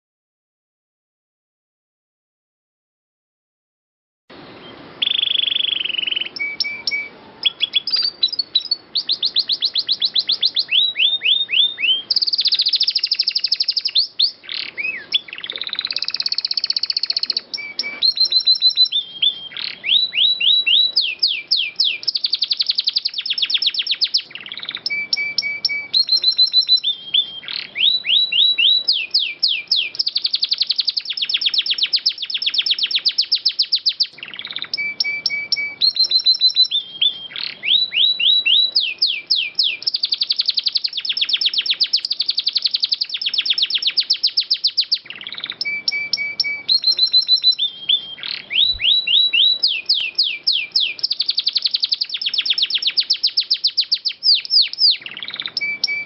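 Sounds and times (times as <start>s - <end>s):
canary singing trills: 4.3s - 56.0s.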